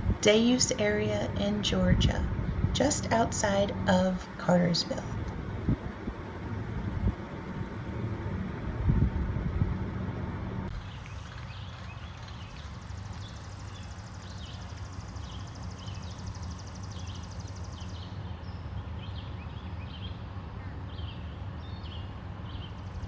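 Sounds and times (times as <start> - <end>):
birds chirping: 0.0 - 8.7
low rumble: 0.0 - 14.1.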